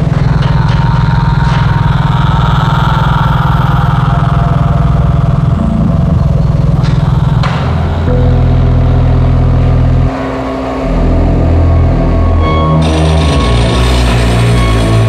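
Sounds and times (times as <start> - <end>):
low organ chords: 5.0 - 15.0.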